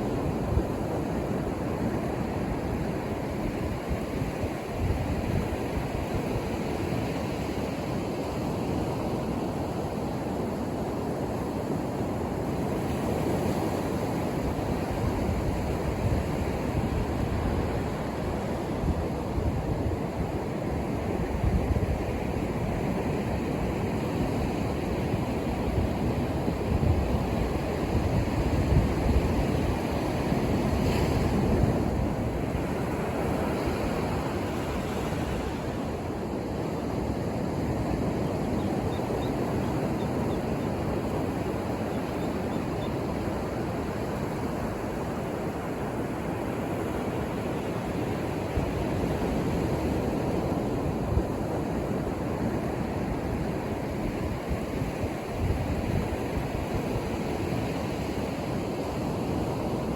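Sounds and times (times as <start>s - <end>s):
wind on microphone: 12.6s - 46.4s, 48.3s - 59.9s.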